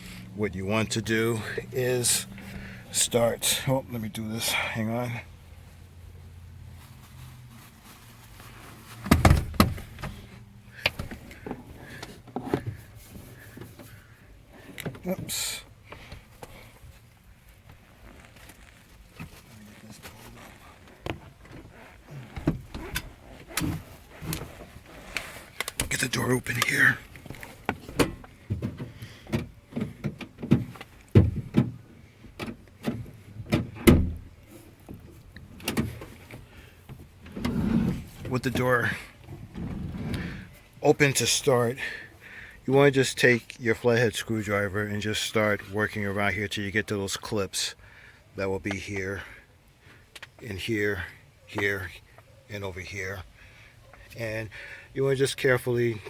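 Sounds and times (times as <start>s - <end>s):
car door clicks and clunks: 9.0s - 10.2s, 27.3s - 34.3s
handling knocks and clicks: 9.0s - 10.2s.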